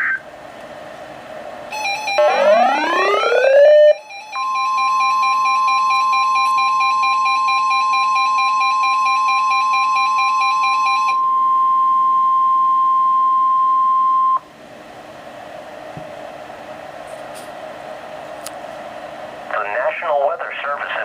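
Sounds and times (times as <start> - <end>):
rapidly pulsing alarm beeps: 1.7 - 11.4
steady warning alarm tone: 1.7 - 14.4
radio hiss: 19.5 - 21.0.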